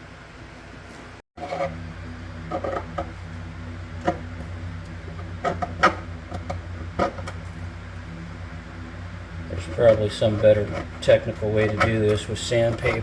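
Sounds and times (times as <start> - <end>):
steady low hum: 0.0 - 13.0
screwdriver scraping putty: 9.6 - 13.0.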